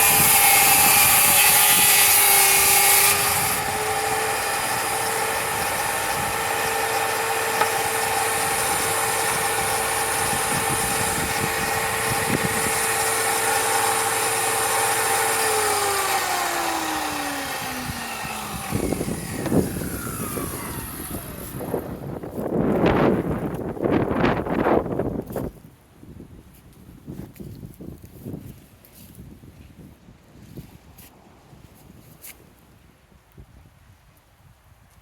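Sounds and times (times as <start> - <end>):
power tool motor whining: 0.0 - 23.6.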